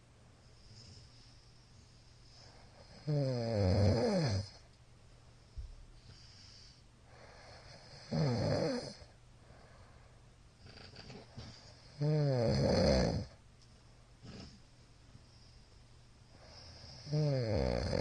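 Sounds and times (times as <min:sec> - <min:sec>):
man snoring loudly: 0:02.8 - 0:04.6, 0:07.3 - 0:09.1, 0:11.8 - 0:13.4, 0:16.5 - 0:18.0.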